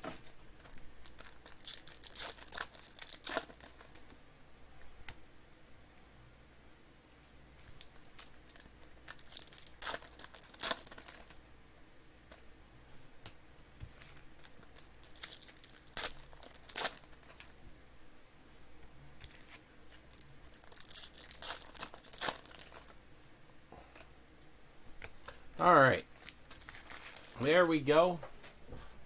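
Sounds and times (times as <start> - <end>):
foil wrappers tearing and crinkling: 0.2 - 4.1, 7.8 - 11.4, 13.9 - 17.6, 19.2 - 23.1, 25.8 - 27.9.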